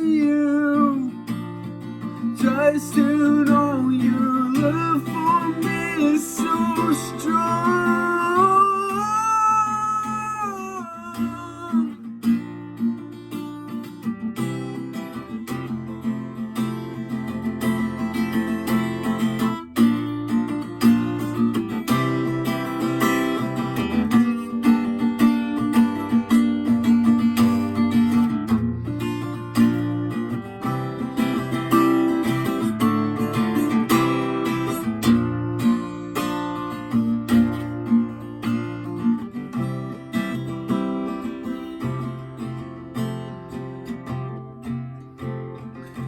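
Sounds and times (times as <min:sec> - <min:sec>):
acoustic guitar strumming: 0:00.0 - 0:46.0
person singing a held note: 0:08.8 - 0:12.0.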